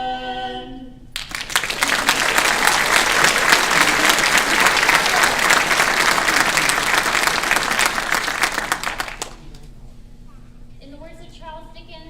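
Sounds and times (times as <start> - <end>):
audience applauding: 1.2 - 9.7.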